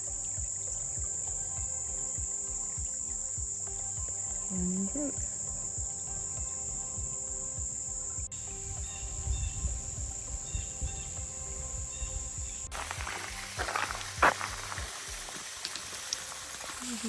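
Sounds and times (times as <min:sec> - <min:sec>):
insects chirping chorus: 0:00.0 - 0:17.0
brook rushing: 0:07.0 - 0:17.0.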